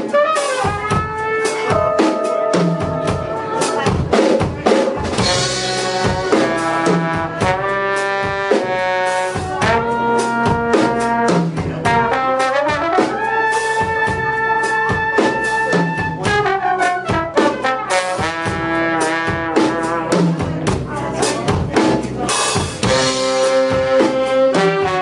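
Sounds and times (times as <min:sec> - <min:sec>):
brass horns holding chords: 0:00.1 - 0:04.0, 0:05.2 - 0:15.1
drum hits: 0:00.6 - 0:07.7.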